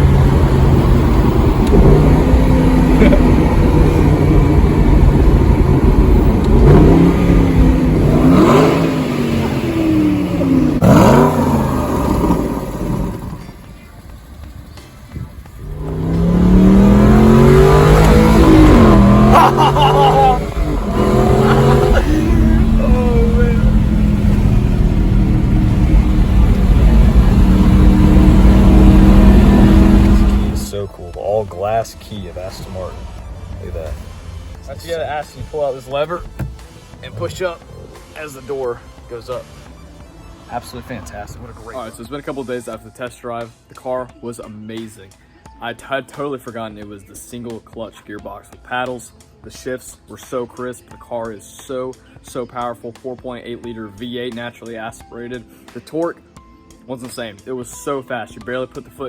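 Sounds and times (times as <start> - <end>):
car engine revving: 0.0 - 13.6, 15.4 - 30.8, 31.6 - 38.4.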